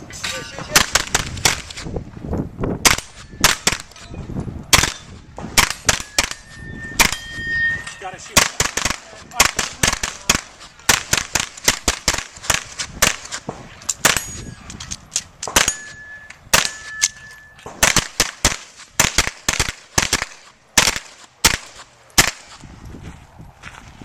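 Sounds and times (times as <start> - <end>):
steel targets ringing: 0.0 - 0.9, 3.1 - 8.4, 14.0 - 14.7, 15.5 - 17.8
carbine gunshots: 0.7 - 1.9, 2.8 - 4.0, 4.7 - 7.2, 8.4 - 14.4, 15.4 - 15.9, 16.5 - 17.0, 17.6 - 22.6.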